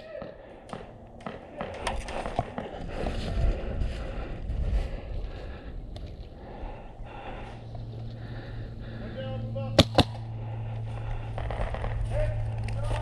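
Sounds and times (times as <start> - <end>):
steady low hum: 0.0 - 13.0
airsoft gun shots: 9.8 - 10.2.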